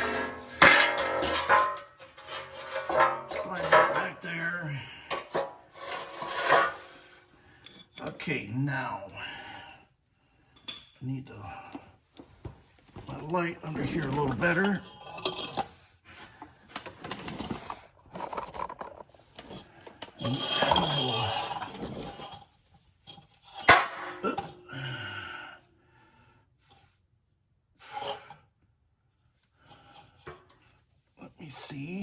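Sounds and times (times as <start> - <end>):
sharp metal clank: 0.0 - 4.2
metal tools clinking and scraping: 0.0 - 8.2, 10.6 - 11.0, 13.6 - 15.8, 16.8 - 24.8.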